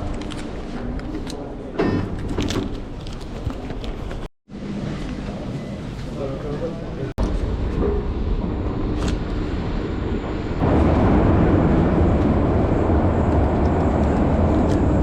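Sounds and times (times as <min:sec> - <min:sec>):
metro train rumbling: 0:06.6 - 0:15.0.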